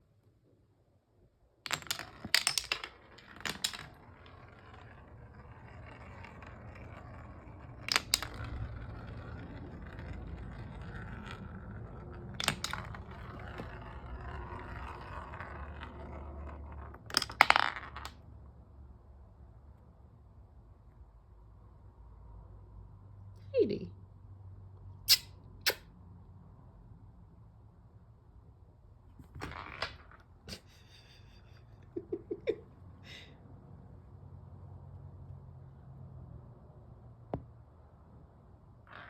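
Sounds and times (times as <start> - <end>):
marbles clacking: 1.6 - 18.2
marbles rolling on wooden track: 1.6 - 18.3, 29.2 - 30.7.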